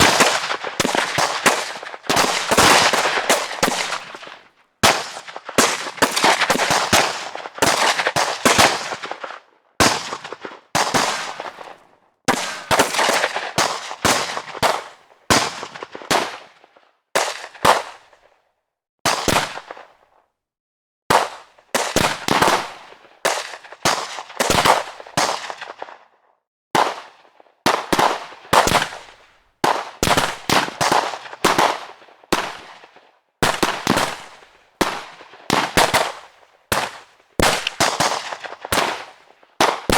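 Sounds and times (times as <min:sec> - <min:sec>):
gunshots with echo: 0:00.0 - 0:09.2, 0:09.8 - 0:16.4.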